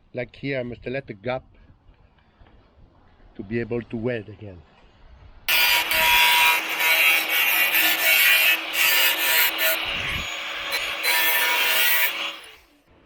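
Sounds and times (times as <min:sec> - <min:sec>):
power tool grinding sheet steel: 0:05.5 - 0:12.8.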